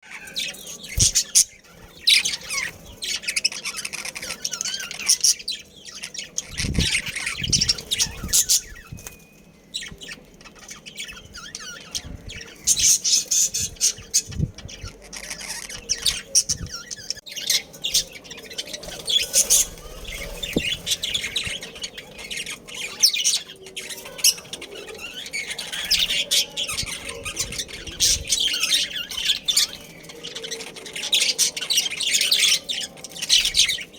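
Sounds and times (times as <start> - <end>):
budgerigars chirping and squawking: 0.0 - 33.9.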